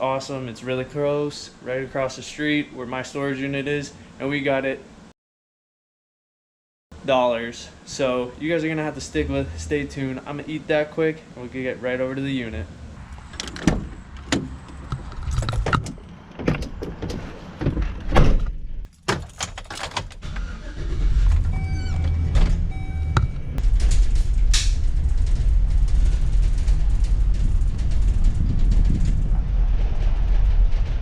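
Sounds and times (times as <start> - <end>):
car engine rumbling: 7.6 - 31.0
car door clicks and knocks: 13.4 - 14.6
keys jingling: 18.9 - 20.2
short beeps: 21.6 - 23.6.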